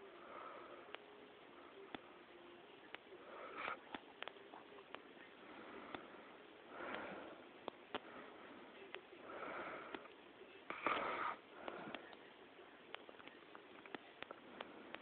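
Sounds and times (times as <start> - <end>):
heavy sleeping breaths: 0.0 - 1.8, 3.1 - 4.0, 5.2 - 12.2, 14.2 - 15.0.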